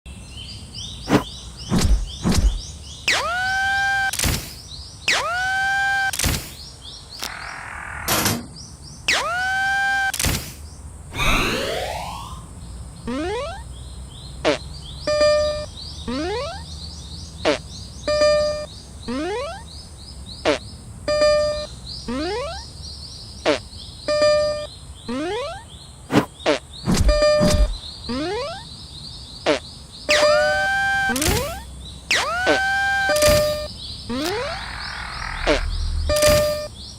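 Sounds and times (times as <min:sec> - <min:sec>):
low thuds: 0:01.1 - 0:02.6
short clicks: 0:04.0 - 0:06.6, 0:07.2 - 0:07.4, 0:10.0 - 0:10.6, 0:30.1 - 0:34.6, 0:35.3 - 0:36.7
falling whistle-like sweeps: 0:11.1 - 0:12.5.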